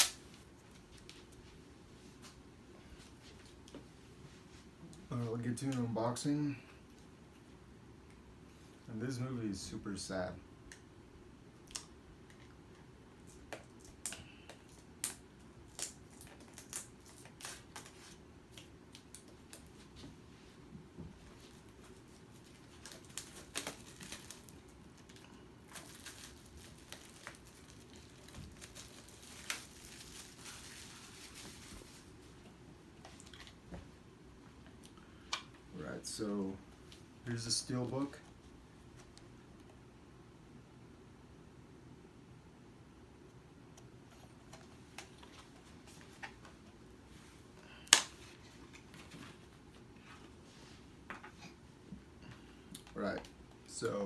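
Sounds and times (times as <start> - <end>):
plastic shrink-wrap crinkling: 14.7 - 19.9, 21.4 - 32.3.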